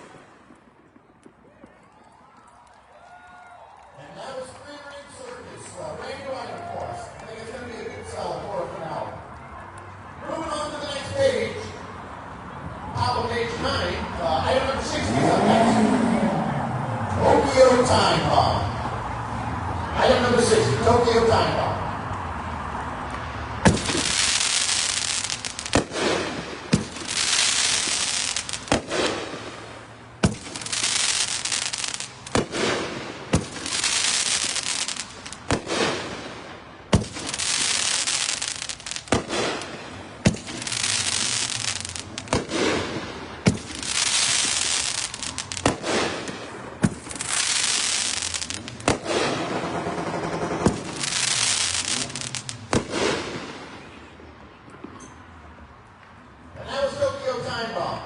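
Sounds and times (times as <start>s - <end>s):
firework hissing crackle: 0.0s - 1.4s, 23.6s - 49.7s, 50.3s - 53.8s
firework launch pops: 23.6s - 49.5s, 50.6s - 53.7s.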